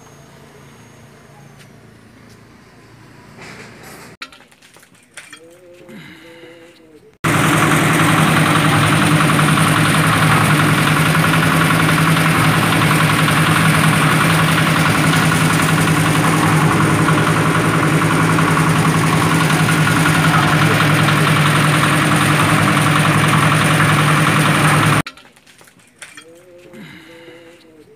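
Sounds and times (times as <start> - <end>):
concrete mixer diesel engine running: 5.8 - 25.1.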